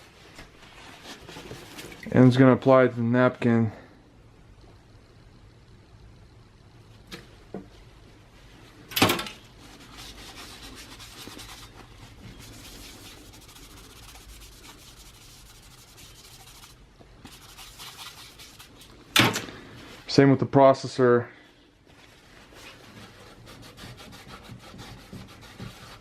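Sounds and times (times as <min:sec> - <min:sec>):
paper towel rubbing metal: 0:09.6 - 0:19.0, 0:22.1 - 0:26.0.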